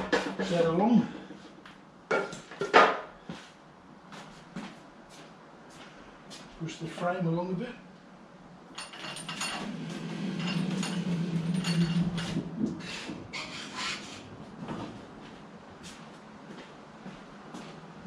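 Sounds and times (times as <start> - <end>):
wheeled frame rolling on floor: 8.8 - 15.1.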